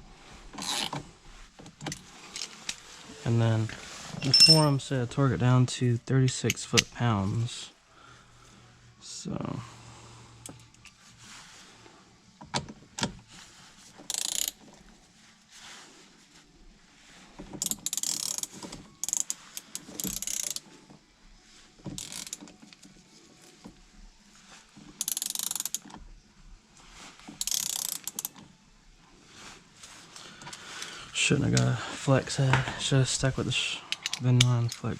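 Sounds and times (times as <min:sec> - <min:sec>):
hand ratchet clicking: 0:14.1 - 0:14.6, 0:17.6 - 0:20.6, 0:22.0 - 0:22.9, 0:25.0 - 0:25.9, 0:27.4 - 0:28.4, 0:33.9 - 0:34.8.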